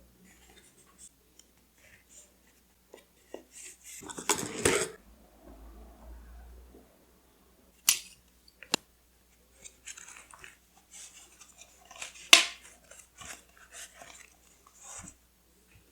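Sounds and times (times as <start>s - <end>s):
paper rustling: 9.5s - 15.2s.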